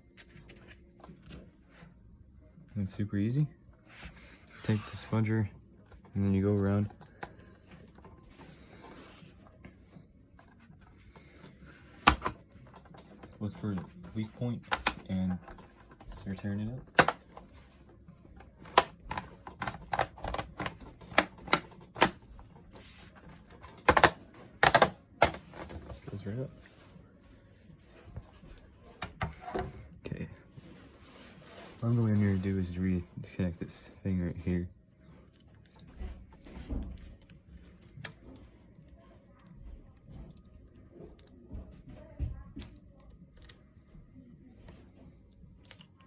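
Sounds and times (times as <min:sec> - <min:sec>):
clicks of plastic laptop parts: 0:18.6 - 0:22.3, 0:23.7 - 0:25.8.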